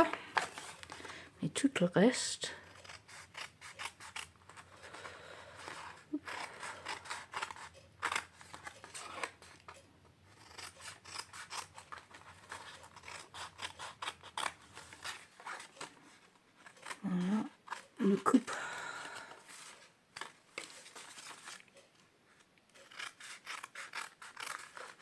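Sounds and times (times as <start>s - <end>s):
scissors snipping card: 5.6s - 16.0s, 22.8s - 25.0s.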